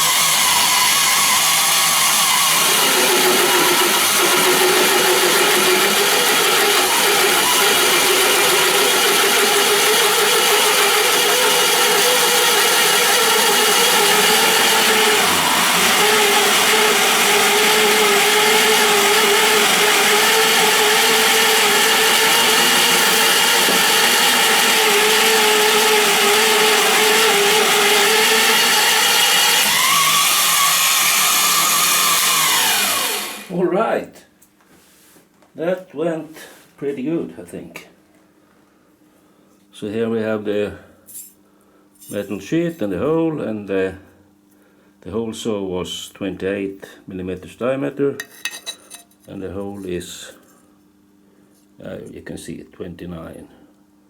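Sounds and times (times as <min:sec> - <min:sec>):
drill motor hum: 0:00.0 - 0:33.5
hole saw grinding through steel: 0:00.0 - 0:33.6, 0:48.2 - 0:50.0.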